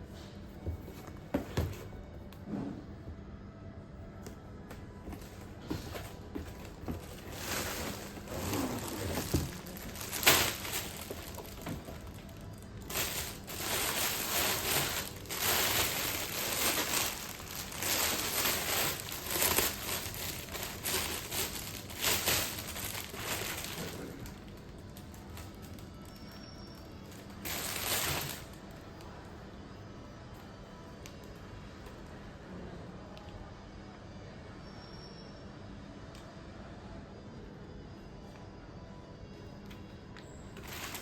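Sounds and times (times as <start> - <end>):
plastic packaging crinkling: 6.0 - 26.3, 27.1 - 28.7, 40.6 - 41.0.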